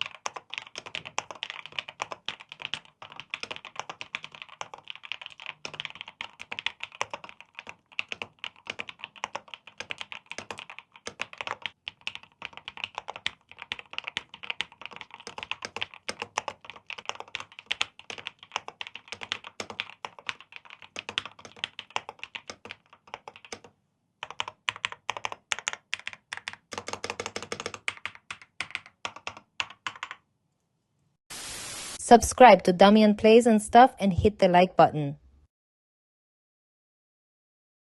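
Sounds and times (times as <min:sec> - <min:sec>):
mechanical keyboard typing: 0:00.0 - 0:30.2.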